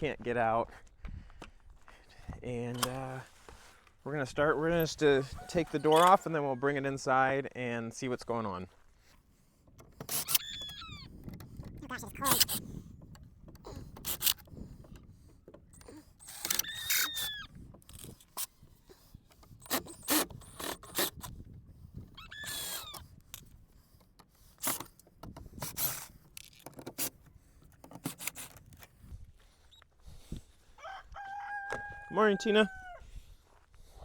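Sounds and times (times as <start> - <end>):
high squeaks: 4.8 - 6.3, 9.9 - 12.7, 15.6 - 18.5, 22.1 - 23.2
clicks and knocks from handling: 22.7 - 29.0.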